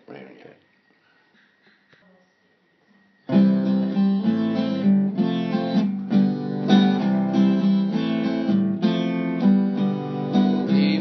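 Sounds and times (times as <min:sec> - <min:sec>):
acoustic guitar strumming chords: 0:03.2 - 0:11.0.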